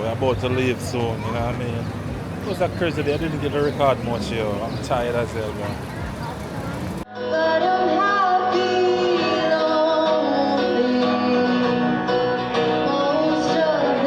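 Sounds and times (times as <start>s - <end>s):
person singing: 7.1s - 14.0s
plucked guitar: 7.2s - 14.0s.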